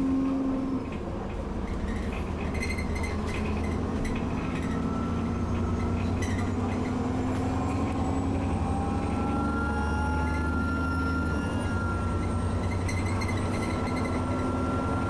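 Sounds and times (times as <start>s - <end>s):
bus diesel engine accelerating: 0.0s - 15.0s.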